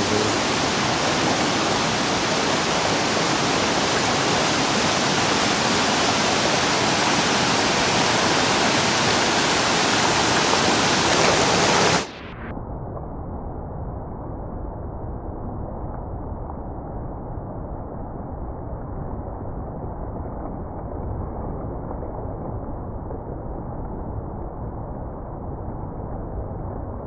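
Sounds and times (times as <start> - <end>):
waterfall rushing: 0.0 - 12.2.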